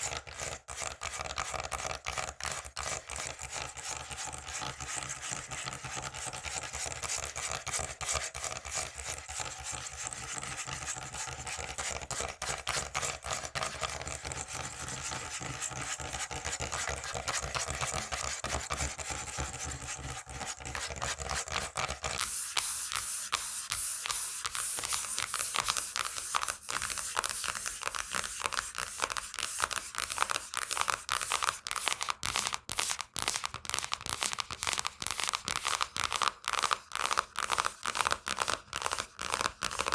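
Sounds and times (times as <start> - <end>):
crisp scratching on a surface: 8.8 - 33.0.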